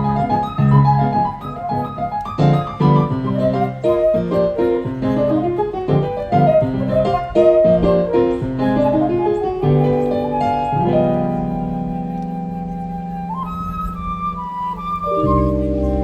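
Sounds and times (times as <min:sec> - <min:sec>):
small ensemble playing music: 0:00.0 - 0:16.0.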